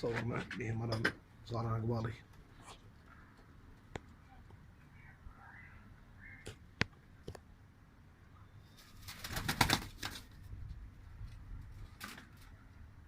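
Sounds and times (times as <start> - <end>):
pigeon wings flapping: 8.8 - 10.5.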